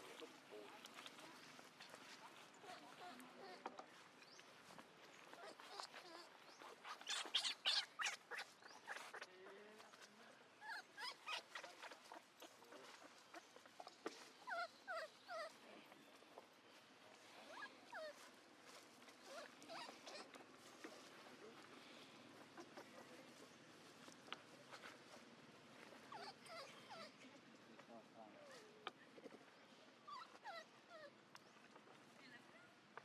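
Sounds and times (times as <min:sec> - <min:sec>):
baby monkey squeaking: 0:05.4 - 0:09.3, 0:10.6 - 0:12.6.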